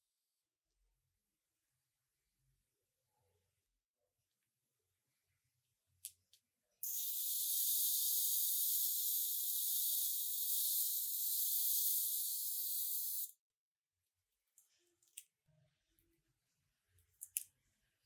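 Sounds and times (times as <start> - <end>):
pressurised spray hissing: 6.8 - 13.3.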